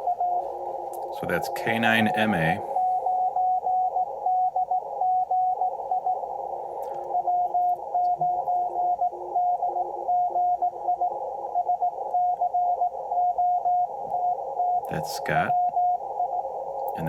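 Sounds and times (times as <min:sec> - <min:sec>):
radio band hiss: 0:00.0 - 0:03.1, 0:14.8 - 0:15.7
fainter lower morse signal: 0:00.0 - 0:17.0
morse code tone: 0:00.0 - 0:17.0.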